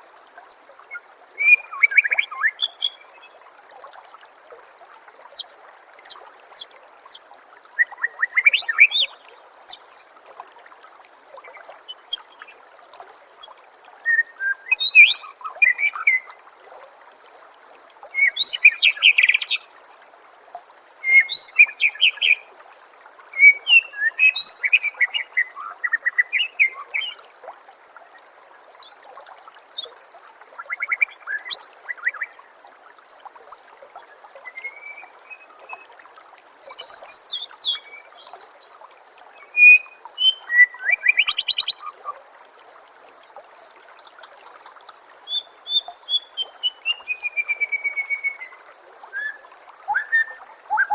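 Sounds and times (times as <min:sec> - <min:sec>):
water trickling: 0:00.0 - 0:50.9
bird whistles and chirps: 0:00.9 - 0:03.0, 0:14.1 - 0:16.2, 0:39.6 - 0:41.9, 0:45.3 - 0:50.9.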